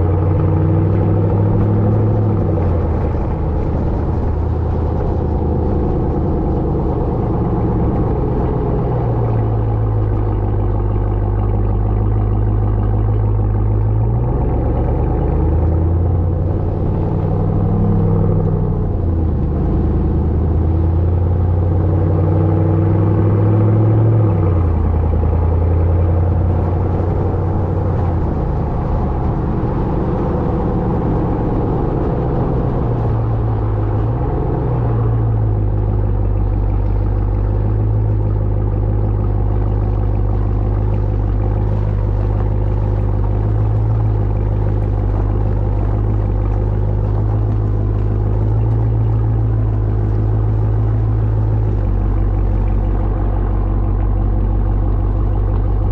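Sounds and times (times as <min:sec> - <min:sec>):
truck exhaust droning: 0:00.0 - 0:55.9.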